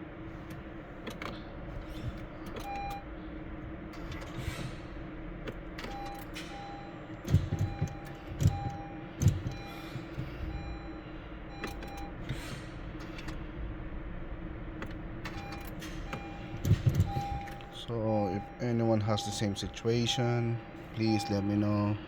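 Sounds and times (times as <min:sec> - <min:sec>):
electrical hum: 0:00.0 - 0:22.0
car starter clicking: 0:00.5 - 0:03.0, 0:11.5 - 0:13.5, 0:14.8 - 0:17.9
short beeping tones: 0:15.4 - 0:22.0.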